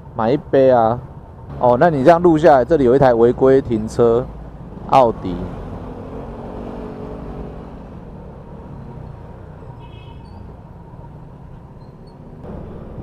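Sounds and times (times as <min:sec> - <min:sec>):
road and wind noise: 0:00.0 - 0:13.0
faint high squeal: 0:09.9 - 0:10.5, 0:11.8 - 0:12.3
motorbike engine rumble: 0:11.5 - 0:13.0.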